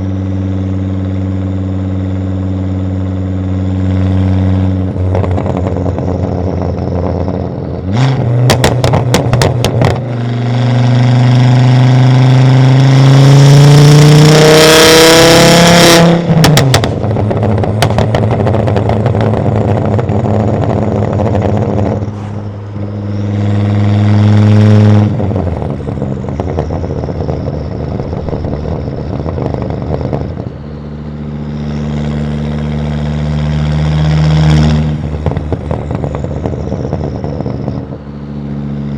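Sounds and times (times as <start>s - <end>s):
turbocharged car engine revving: 0.0s - 38.9s
car exhaust pops and cracks: 5.0s - 6.7s, 8.0s - 10.2s, 16.3s - 22.0s, 35.1s - 37.9s.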